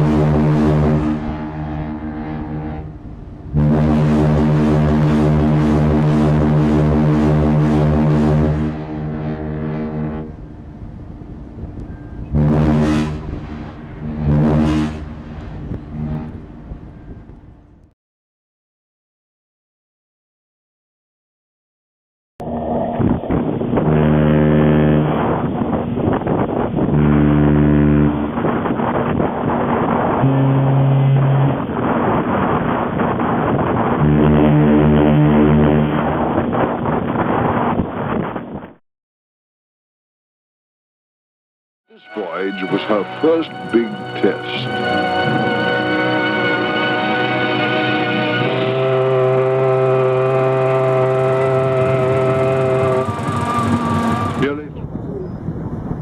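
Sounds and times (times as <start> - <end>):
deep ship's whistle blasts: 0.0 - 10.6, 11.8 - 17.4, 23.8 - 25.5, 26.8 - 28.6, 30.0 - 31.6, 34.0 - 36.0, 41.9 - 54.6
steady rushing noise: 8.3 - 17.6, 41.9 - 55.0.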